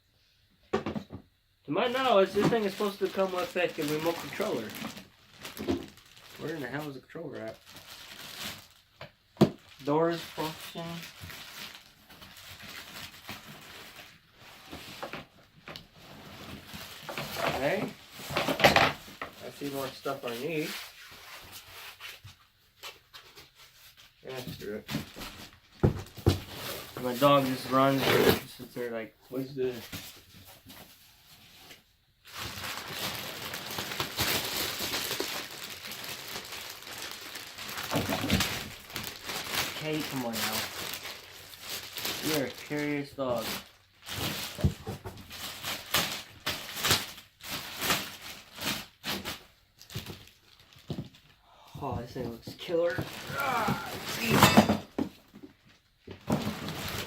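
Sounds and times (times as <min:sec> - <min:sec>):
packaging crinkling: 0:01.9 - 0:15.2, 0:15.8 - 0:21.0, 0:32.2 - 0:54.7, 0:55.6 - 0:57.0.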